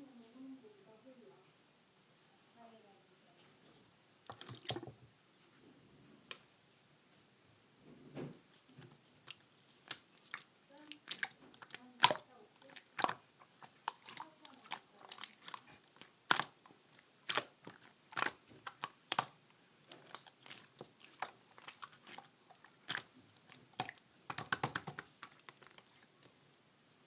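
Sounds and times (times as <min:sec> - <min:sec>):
crunchy chewing: 0:08.7 - 0:26.4.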